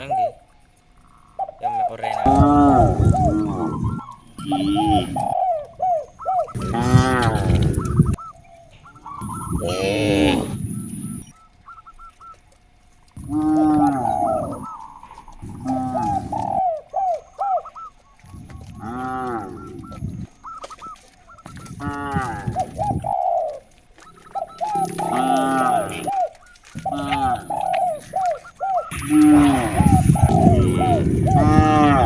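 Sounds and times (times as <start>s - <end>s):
cattle mooing: 2.2s - 5.4s, 6.6s - 8.2s, 9.2s - 11.3s, 13.2s - 14.7s, 18.5s - 20.2s, 21.6s - 23.0s, 24.6s - 32.0s.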